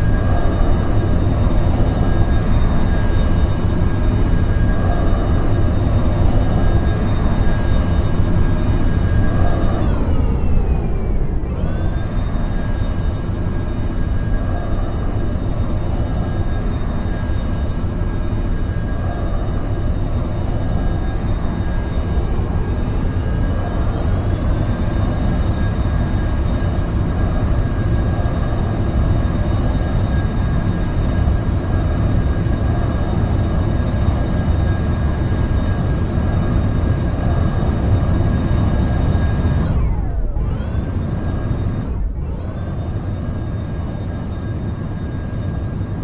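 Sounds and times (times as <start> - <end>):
jet engines running: 0.0 - 46.0.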